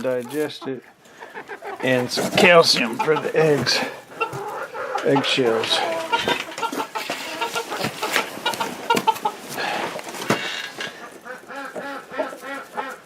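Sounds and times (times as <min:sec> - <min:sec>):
chickens clucking: 0:00.0 - 0:13.0.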